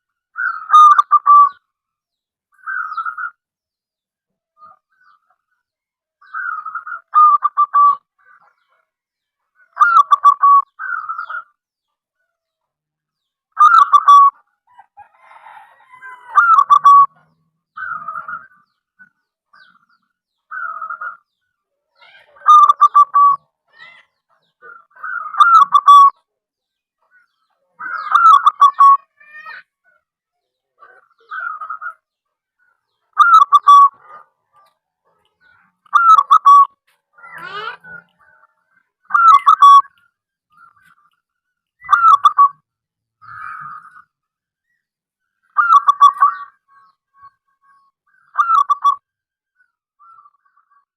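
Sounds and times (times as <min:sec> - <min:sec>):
dove cooing: 0:09.8 - 0:11.3, 0:33.2 - 0:34.3.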